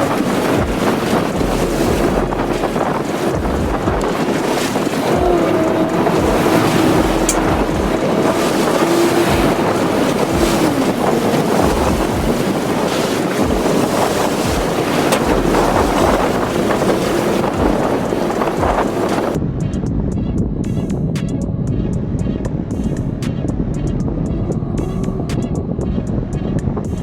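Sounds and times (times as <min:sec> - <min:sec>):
breaking surf: 0:00.0 - 0:19.4
boat engine hum: 0:00.0 - 0:27.0
wind buffeting microphone: 0:00.0 - 0:27.0.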